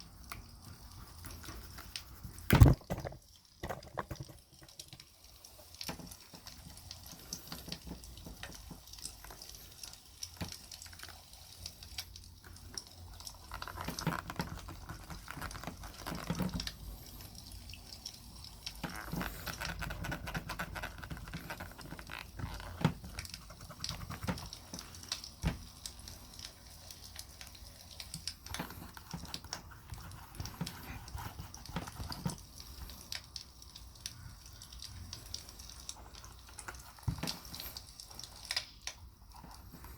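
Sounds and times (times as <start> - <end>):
soft rubbing on leather: 28.5 - 32.4.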